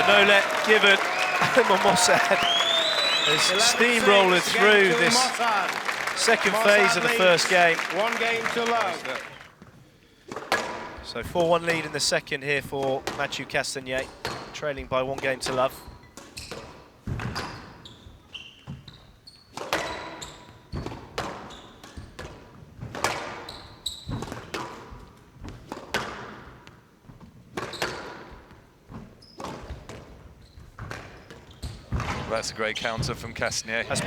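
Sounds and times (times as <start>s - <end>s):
shoes squeaking on floor: 15.8s - 20.8s, 23.4s - 24.3s, 30.3s - 33.1s.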